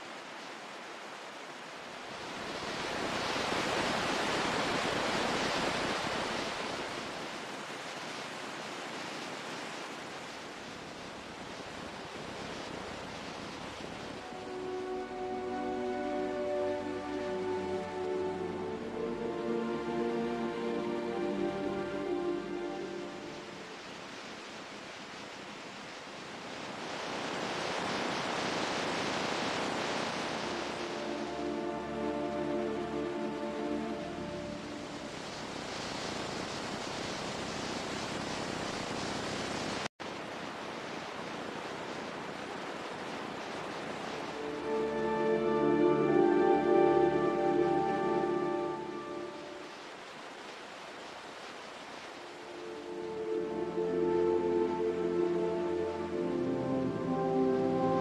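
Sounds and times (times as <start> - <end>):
ocean surf rushing: 0.0 - 58.0
soft music with held tones: 14.1 - 23.7, 30.4 - 35.2, 44.2 - 49.8, 52.3 - 58.0.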